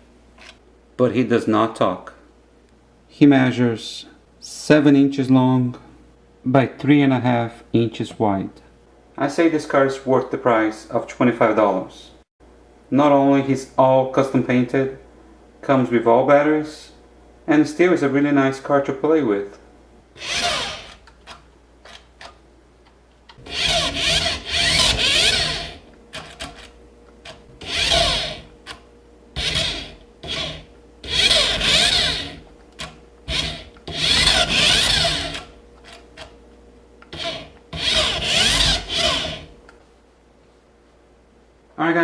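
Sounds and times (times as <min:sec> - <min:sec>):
toy car motor whirring: 0:20.2 - 0:21.0, 0:23.5 - 0:26.6, 0:27.6 - 0:28.4, 0:29.4 - 0:32.4, 0:33.3 - 0:35.5, 0:37.1 - 0:39.5.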